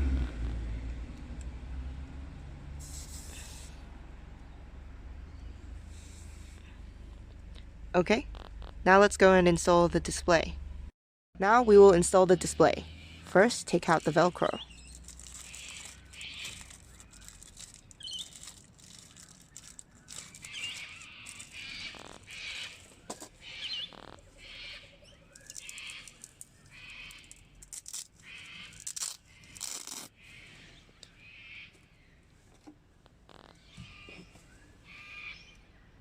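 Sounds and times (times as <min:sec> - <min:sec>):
birds chirping: 0:04.4 - 0:07.4, 0:11.5 - 0:29.6.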